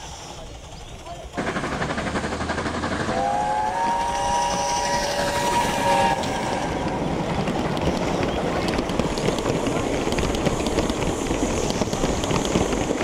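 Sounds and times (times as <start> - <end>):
steady steam hissing: 0.0 - 13.0
model steam locomotive whistle: 3.1 - 7.1.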